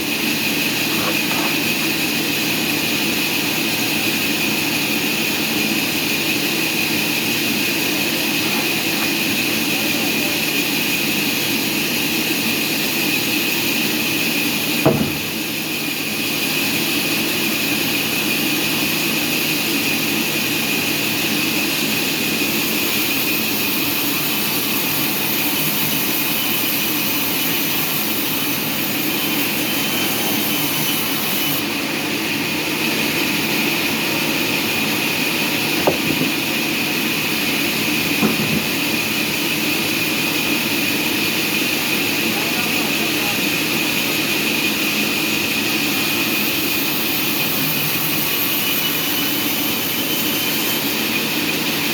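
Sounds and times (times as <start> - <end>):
sawmill machinery whining: 0.0 - 51.9
short knocks: 14.8 - 15.4, 35.8 - 36.4, 38.2 - 38.8.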